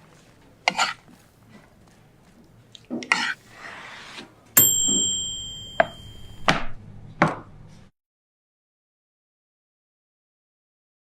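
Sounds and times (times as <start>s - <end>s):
utensil ringing on dish: 4.6s - 6.5s.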